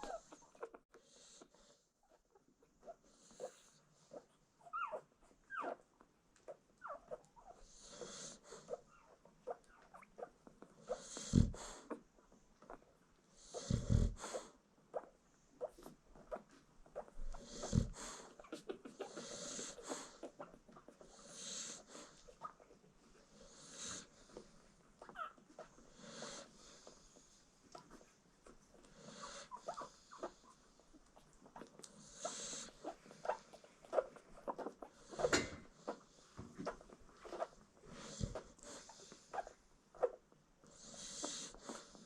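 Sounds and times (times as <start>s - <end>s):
puppy squeaks: 0.0s - 0.8s, 2.0s - 7.7s, 8.7s - 11.1s, 14.2s - 22.8s, 25.0s - 25.8s, 29.2s - 36.0s, 36.6s - 37.6s, 38.2s - 40.2s
puppies nursing clicks and smacks: 0.0s - 42.0s
dog snoring: 7.6s - 8.7s, 10.8s - 12.0s, 13.4s - 14.6s, 17.3s - 20.3s, 21.1s - 22.2s, 23.4s - 24.2s, 25.9s - 27.3s, 28.9s - 30.5s, 31.9s - 33.5s, 37.4s - 39.6s, 40.7s - 42.0s.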